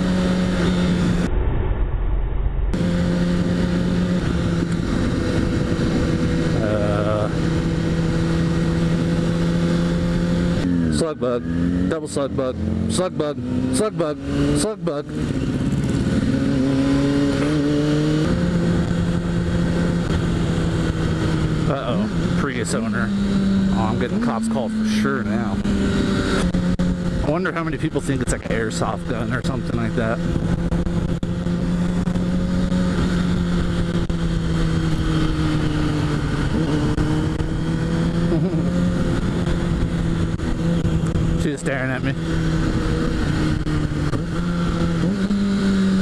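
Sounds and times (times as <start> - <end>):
wind noise on microphone: 0.0 - 6.7
motorcycle engine running: 2.7 - 46.0.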